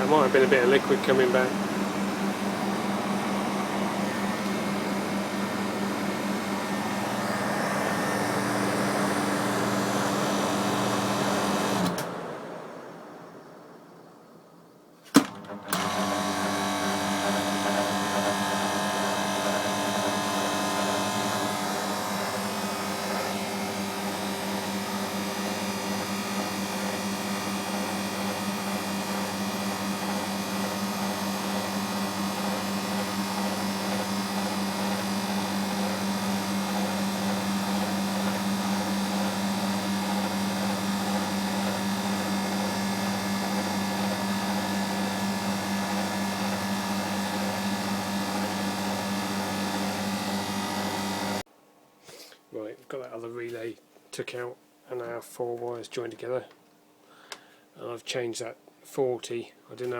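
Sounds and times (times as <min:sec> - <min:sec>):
compressor humming: 0:00.0 - 0:13.5, 0:15.1 - 0:51.5
compressor switch click: 0:15.0 - 0:16.0.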